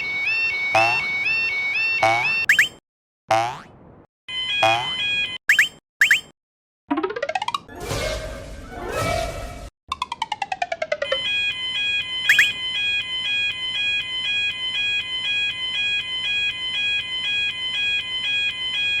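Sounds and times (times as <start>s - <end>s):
rising chirp: 2.0s - 2.8s, 4.6s - 6.3s, 12.3s - 12.6s.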